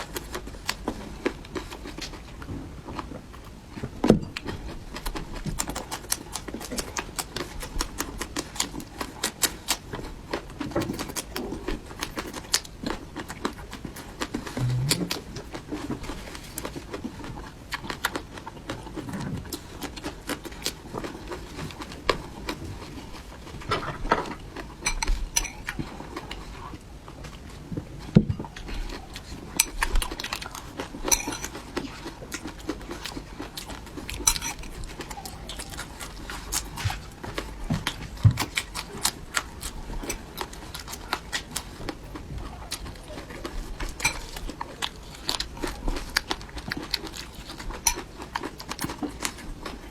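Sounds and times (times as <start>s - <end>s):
utensils clinking against dish: 24.8s - 25.7s, 31.1s - 31.6s, 34.2s - 34.7s.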